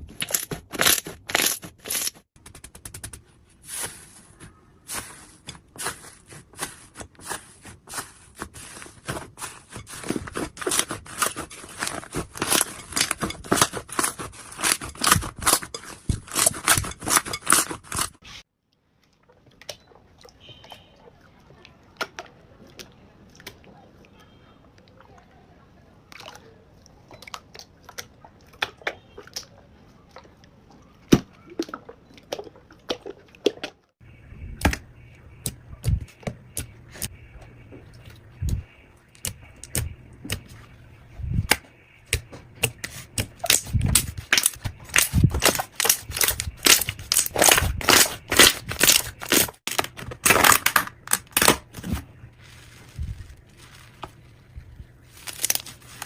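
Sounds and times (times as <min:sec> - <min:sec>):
slime popping and crackling: 0:43.2 - 0:51.8.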